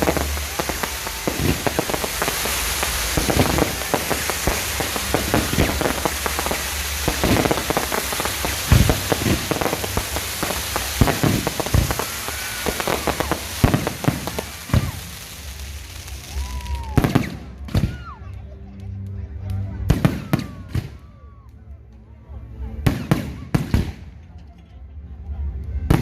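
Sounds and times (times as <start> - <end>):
firework bangs: 0.0 - 18.0, 19.8 - 21.1, 22.8 - 24.2
fireworks crackling: 0.0 - 21.4, 22.6 - 24.3.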